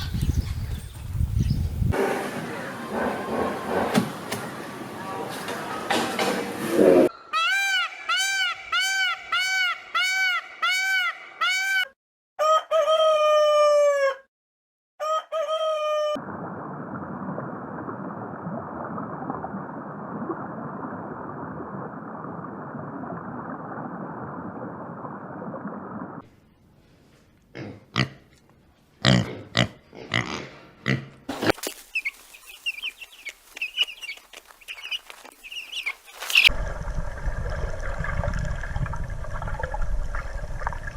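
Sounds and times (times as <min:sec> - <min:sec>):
falling bird calls: 0:31.7 - 0:36.5.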